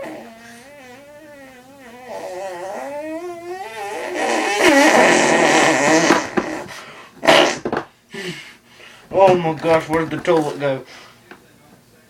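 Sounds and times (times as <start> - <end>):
buzzy fart noise: 0.0 - 7.9.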